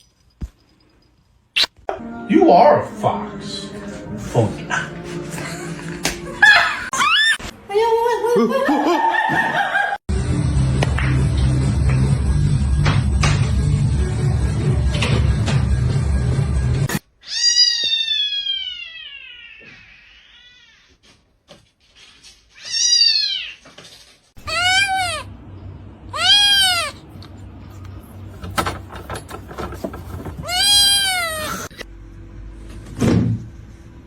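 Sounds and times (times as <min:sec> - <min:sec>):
cat meowing: 0:17.2 - 0:21.0, 0:24.4 - 0:25.3, 0:26.1 - 0:27.0, 0:30.4 - 0:31.8.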